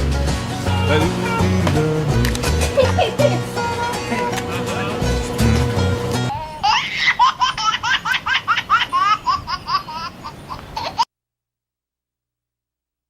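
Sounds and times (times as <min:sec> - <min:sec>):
high-pitched laughter: 0:02.6 - 0:03.5, 0:06.3 - 0:11.1.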